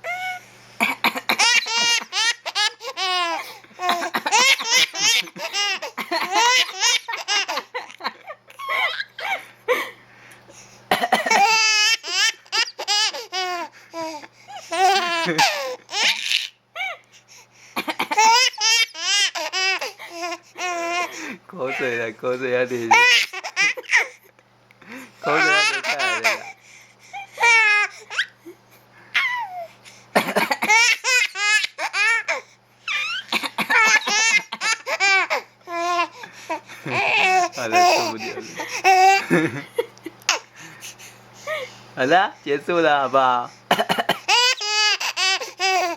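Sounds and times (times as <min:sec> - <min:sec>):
baby laughing: 0:00.1 - 0:09.4, 0:11.2 - 0:16.6, 0:17.8 - 0:22.0, 0:22.9 - 0:24.2, 0:25.2 - 0:26.6, 0:27.4 - 0:28.4, 0:29.1 - 0:29.7, 0:30.4 - 0:39.5, 0:44.0 - 0:45.9
adult coughing: 0:00.8 - 0:01.6, 0:05.8 - 0:06.4, 0:10.9 - 0:11.5, 0:30.2 - 0:30.9, 0:33.3 - 0:34.7, 0:43.7 - 0:44.3.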